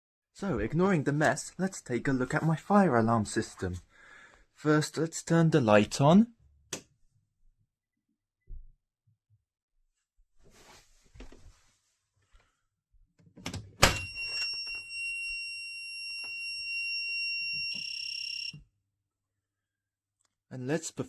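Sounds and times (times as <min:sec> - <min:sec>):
alarm buzzer high tone: 0:14.0 - 0:18.6.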